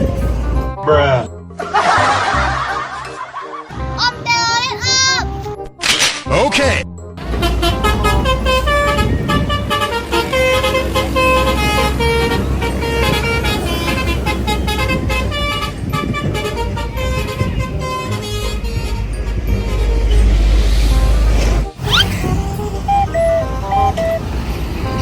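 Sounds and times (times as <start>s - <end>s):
bus engine rumble: 0.0s - 0.8s, 7.2s - 25.0s
bus horn playing melody: 7.2s - 25.0s.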